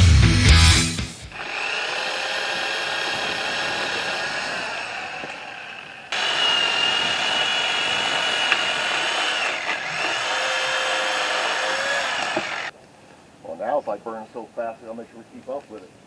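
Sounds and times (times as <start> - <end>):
chainsaw cutting wood: 1.3 - 12.7.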